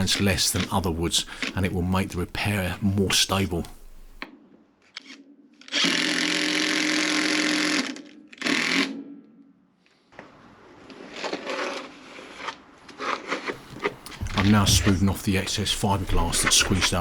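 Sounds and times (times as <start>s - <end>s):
soft scraping: 13.6s - 17.0s.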